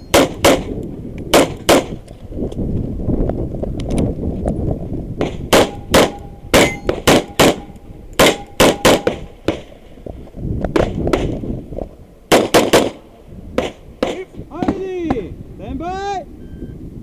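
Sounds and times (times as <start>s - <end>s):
pistol shots: 0.1s - 2.0s, 5.2s - 9.8s, 12.3s - 13.0s, 13.6s - 14.8s.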